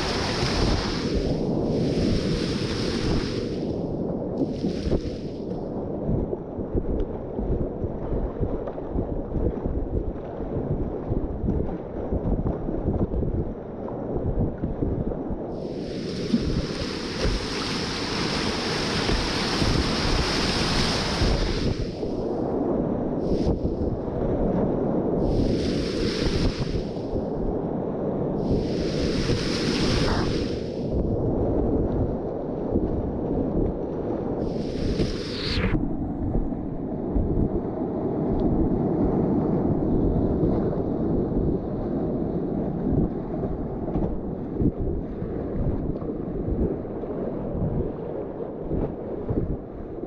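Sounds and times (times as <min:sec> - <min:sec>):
hissing water splashes: 0:00.0 - 0:03.8, 0:04.4 - 0:05.4, 0:15.6 - 0:22.3, 0:23.2 - 0:24.0, 0:25.2 - 0:27.2, 0:28.4 - 0:31.0, 0:34.4 - 0:35.8
wind buffeting microphone: 0:00.0 - 0:50.0
rushing whitewater: 0:15.7 - 0:22.0, 0:28.5 - 0:30.7.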